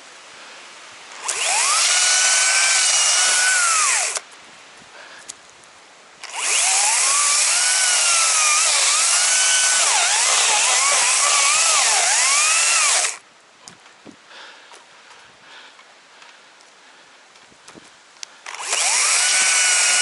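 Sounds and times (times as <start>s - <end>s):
chainsaw cutting wood: 1.1s - 4.2s, 6.2s - 13.2s, 18.4s - 20.0s.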